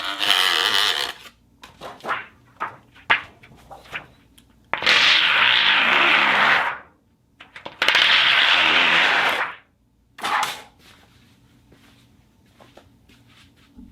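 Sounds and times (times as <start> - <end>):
steel sheet rasping: 4.8 - 6.9, 7.9 - 9.6.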